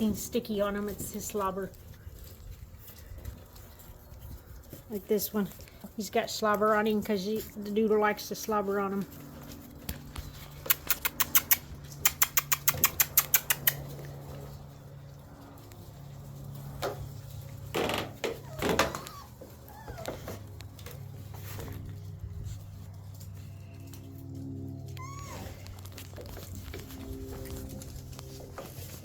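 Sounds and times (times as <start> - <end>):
puppies whimpering and squeaking: 9.4 - 14.3, 18.2 - 28.0
sharp clicks: 10.6 - 14.1.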